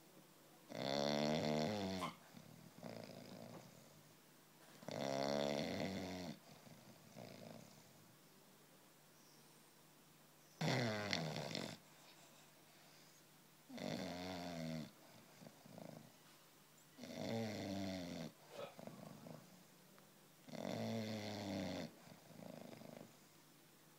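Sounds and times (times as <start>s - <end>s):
puppy snoring: 0.7s - 4.1s, 4.8s - 8.0s, 10.6s - 16.2s, 17.0s - 19.7s, 20.4s - 23.3s
soft breaths: 11.5s - 13.8s, 18.0s - 20.9s.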